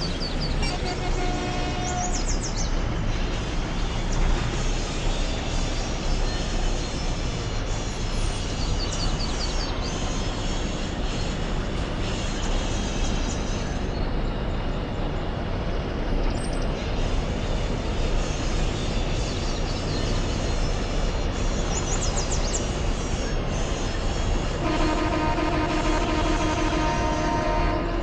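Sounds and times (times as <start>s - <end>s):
vehicle rumbling and rattling: 0.0s - 28.0s
steady whine: 14.5s - 28.0s.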